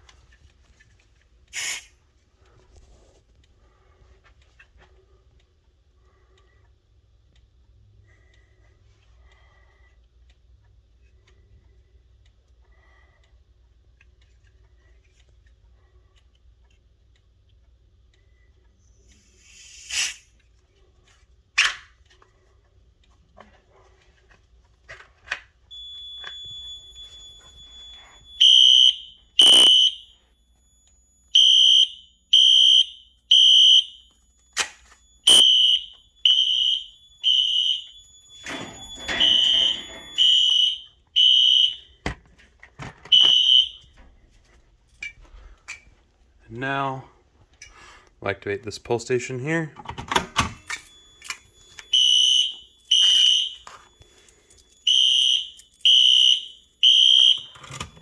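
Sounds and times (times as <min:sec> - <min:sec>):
short hiss: 0:19.3 - 0:20.3
fire alarm horn beeping: 0:25.7 - 0:42.2, 0:43.0 - 0:44.1, 0:50.4 - 0:58.0
clicks: 0:29.4 - 0:31.4.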